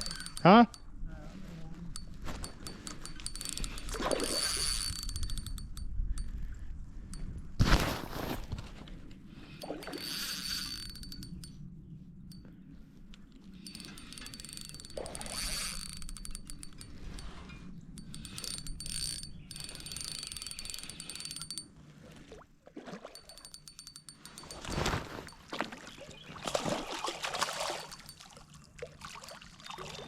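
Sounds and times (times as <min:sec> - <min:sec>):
fishing reel ratcheting clicks: 0:00.0 - 0:01.0, 0:01.9 - 0:06.5, 0:09.6 - 0:11.6, 0:13.5 - 0:21.7, 0:23.2 - 0:24.9, 0:27.8 - 0:28.2.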